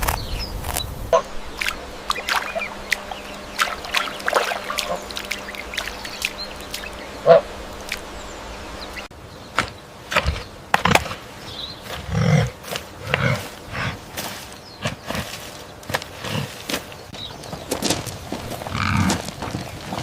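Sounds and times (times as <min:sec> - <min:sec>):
low throaty animal calls: 0:01.1 - 0:09.0, 0:11.8 - 0:17.4, 0:18.4 - 0:20.0
animal scuffling and clicking: 0:14.1 - 0:20.0.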